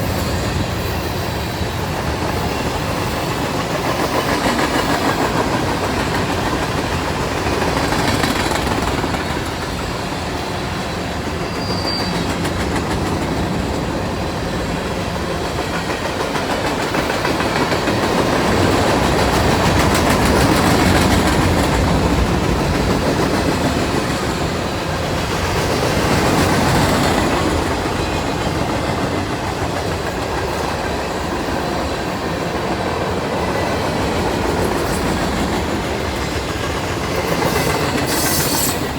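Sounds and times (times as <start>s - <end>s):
train wheels clicking over rails: 0.0s - 38.9s
high wheel squeal: 11.4s - 12.4s, 37.2s - 38.9s.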